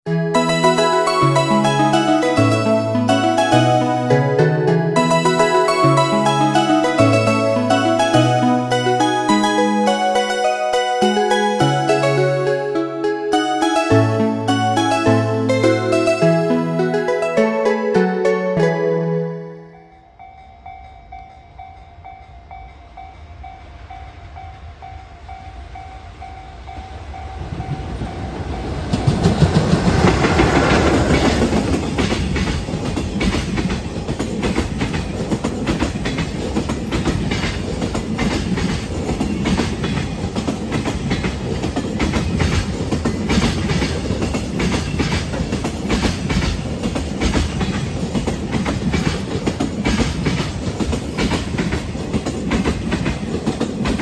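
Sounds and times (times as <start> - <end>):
level crossing alarm ringing: 0.3 - 20.1
freight train rumble: 20.8 - 54.0
train wheels clattering over rails: 27.2 - 54.0.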